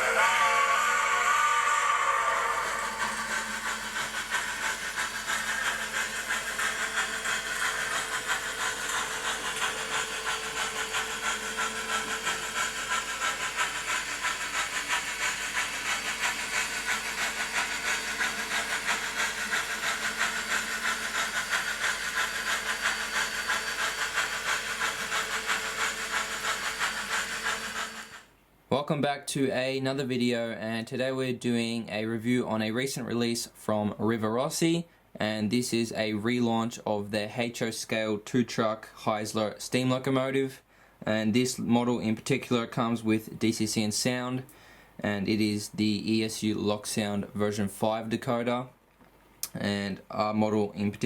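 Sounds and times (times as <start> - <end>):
steam locomotive hissing and chuffing: 0.0 - 28.4.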